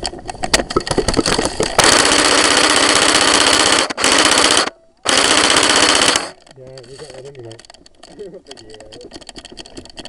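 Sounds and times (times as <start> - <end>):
airsoft rifle firing full auto: 1.8 - 6.4
clicks and knocks: 6.4 - 10.0.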